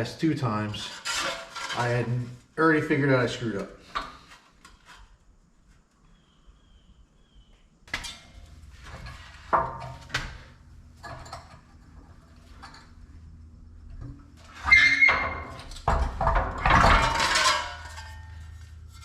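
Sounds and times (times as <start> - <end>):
metallic clanks of sheet aluminium: 0.9 - 2.0, 7.9 - 13.0, 14.0 - 19.0.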